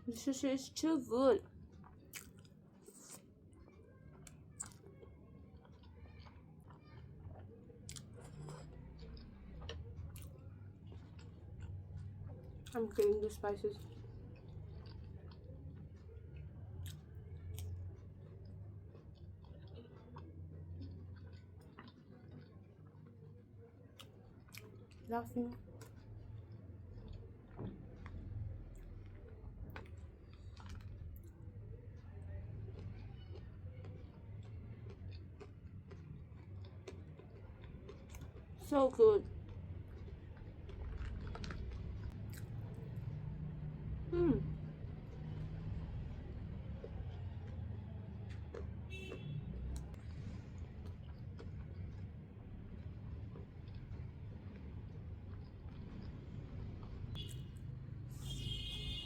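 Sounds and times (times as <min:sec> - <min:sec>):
close-miked chewing: 0:00.8 - 0:59.0
chopsticks clicking while eating: 0:01.8 - 0:03.3.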